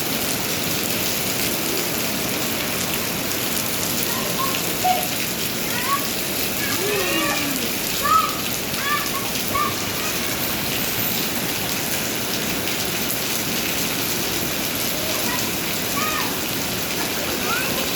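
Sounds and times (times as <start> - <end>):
steady rain pouring: 0.0 - 17.9
short high-pitched sounds: 10.2 - 11.4.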